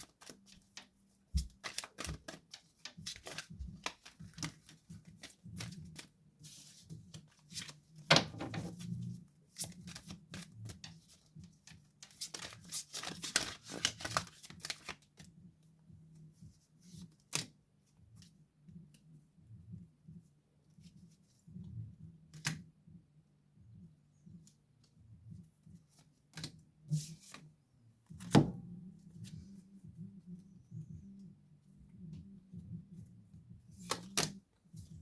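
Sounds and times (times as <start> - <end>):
cards being shuffled: 0.0 - 15.2, 33.8 - 34.4.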